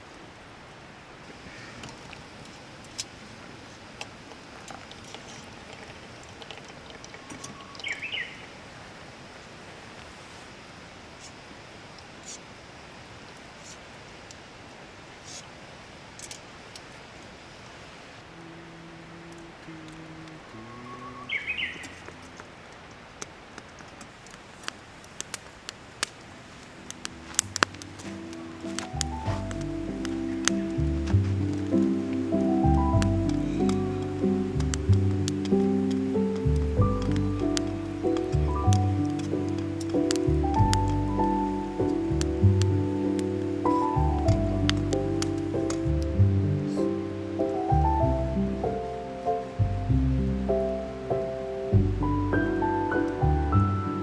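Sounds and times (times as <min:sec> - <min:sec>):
wood fire crackling and popping: 0:22.7 - 0:47.6
soft background music: 0:26.4 - 0:54.0.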